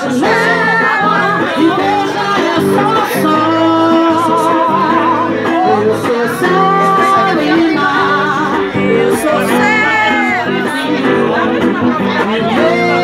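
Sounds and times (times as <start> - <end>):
person singing with vibrato: 0.0 - 13.0.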